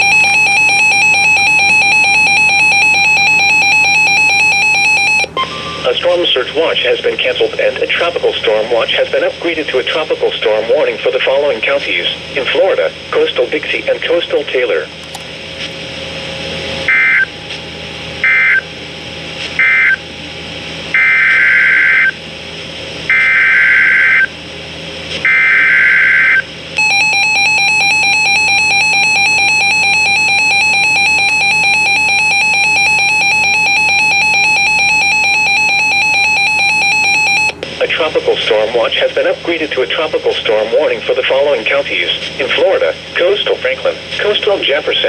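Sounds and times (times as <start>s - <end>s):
loud steady attention tone: 0.0s - 12.6s, 25.2s - 39.6s.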